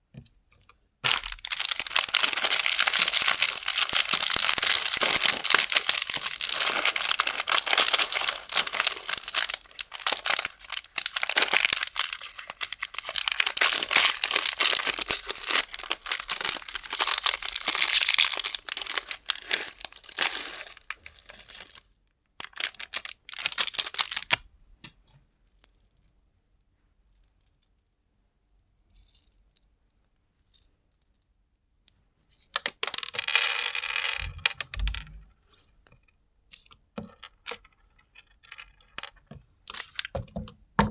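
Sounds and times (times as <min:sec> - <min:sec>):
candies rattling: 0:01.0 - 0:24.4
plastic wrappers crinkling: 0:01.0 - 0:24.4.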